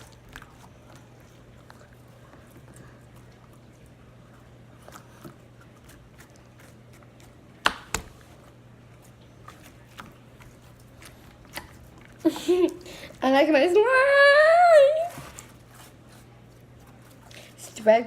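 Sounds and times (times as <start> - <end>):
low electrical hum: 0.0 - 18.0.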